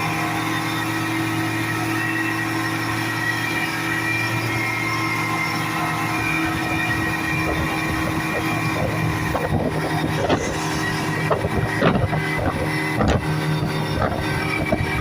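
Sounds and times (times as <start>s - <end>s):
speedboat engine running: 0.0s - 15.0s
hull slapping waves: 4.9s - 15.0s.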